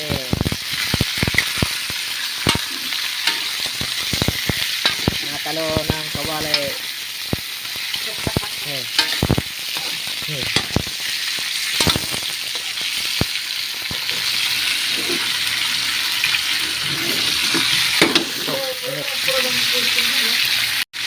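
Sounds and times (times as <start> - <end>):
chicken sizzling in a wok: 0.0 - 21.0
spatula scraping and knocking pan: 2.4 - 6.8, 7.9 - 11.0, 13.9 - 15.4, 16.5 - 18.7.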